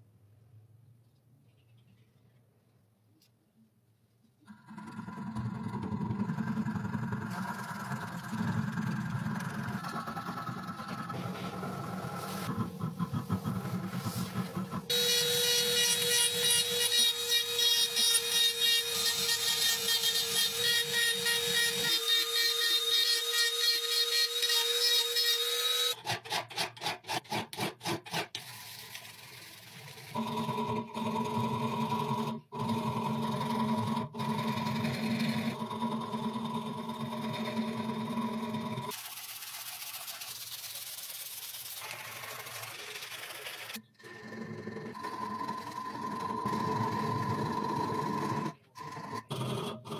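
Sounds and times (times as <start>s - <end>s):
power tool low hum: 4.5s - 26.0s.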